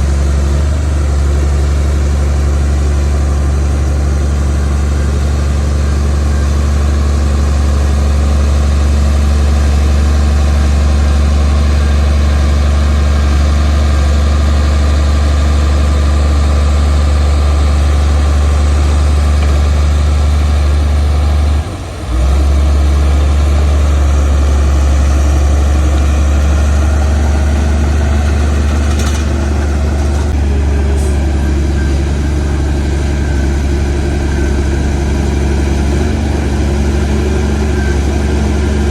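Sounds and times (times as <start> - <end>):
diesel earthmoving machinery running: 0.0 - 38.9.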